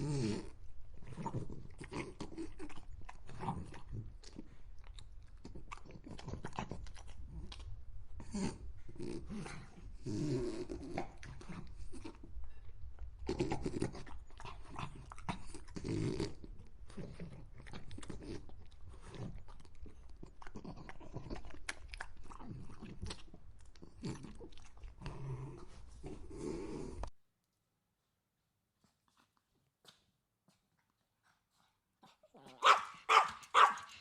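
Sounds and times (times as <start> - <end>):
dog chewing with crunching: 0.9 - 26.1.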